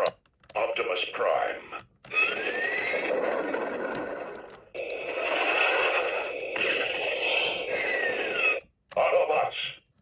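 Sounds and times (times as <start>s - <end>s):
toy electronic whirring sound effect: 1.2s - 8.7s.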